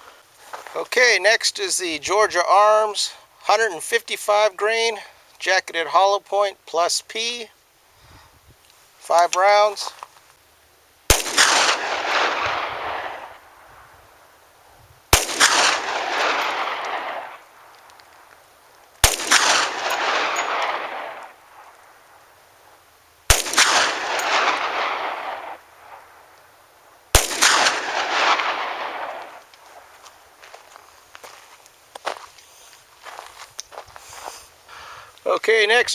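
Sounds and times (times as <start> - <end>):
gunshot echo: 11.1 - 13.4, 15.2 - 17.5, 19.0 - 21.4, 23.3 - 26.1, 27.2 - 29.5
pistol shots: 11.1 - 13.5, 15.1 - 17.6, 19.0 - 21.6, 23.3 - 26.2, 27.1 - 29.6.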